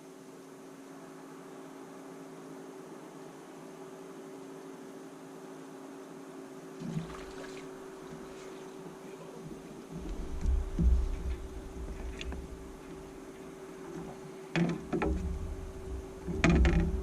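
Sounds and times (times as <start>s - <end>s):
steady hum: 0.0s - 17.0s
knocks and rattles: 9.9s - 13.2s, 13.9s - 17.0s
low rumble: 9.9s - 13.4s, 14.9s - 17.0s.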